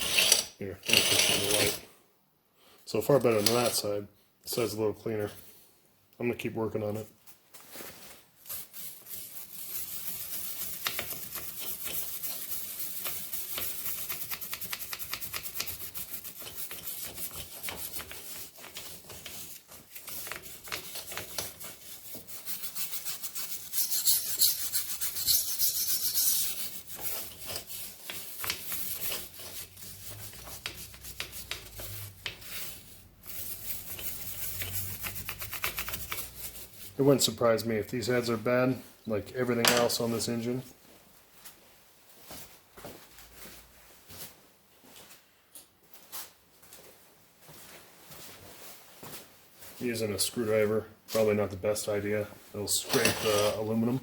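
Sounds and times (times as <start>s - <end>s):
scrubbing metal cylinder head: 8.5s - 37.0s.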